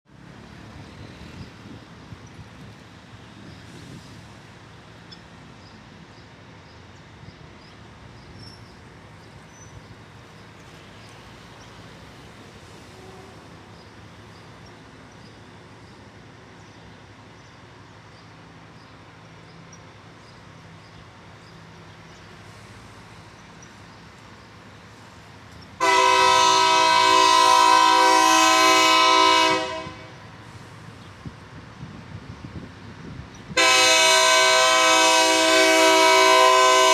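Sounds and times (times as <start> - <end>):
diesel engines rumbling: 0.1 - 36.9
train air horn blast: 12.8 - 13.7, 25.8 - 30.6, 33.6 - 36.9.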